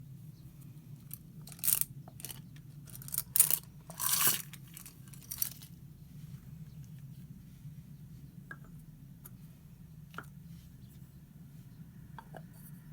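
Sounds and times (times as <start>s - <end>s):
paper clips scraping on paper: 1.5s - 5.7s.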